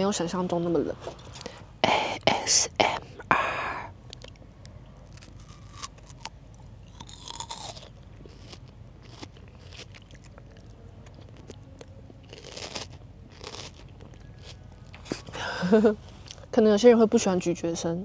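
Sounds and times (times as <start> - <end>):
crunchy chewing of food: 4.1 - 15.4.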